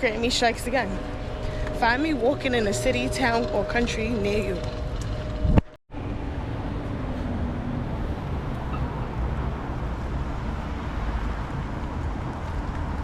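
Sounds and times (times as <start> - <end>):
low rumble of passing vehicles: 0.0 - 13.0.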